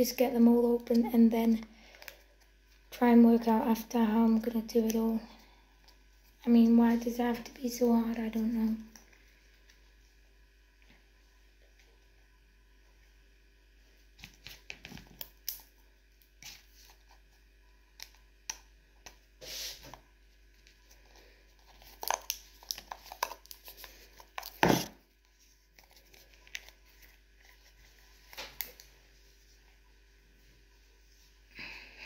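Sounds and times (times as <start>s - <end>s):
packaging crinkling and ripping: 20.6s - 25.0s, 25.7s - 28.9s.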